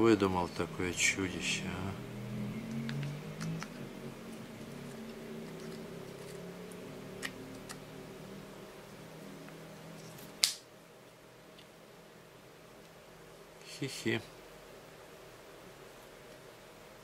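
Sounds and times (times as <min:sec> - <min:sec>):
low hum: 0:00.0 - 0:10.3
sharp snap: 0:10.4 - 0:10.7.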